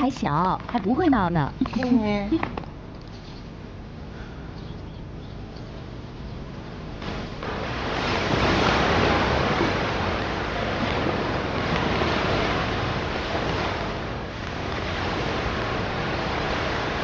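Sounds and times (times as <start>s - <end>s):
waves breaking on shore: 7.0s - 17.0s.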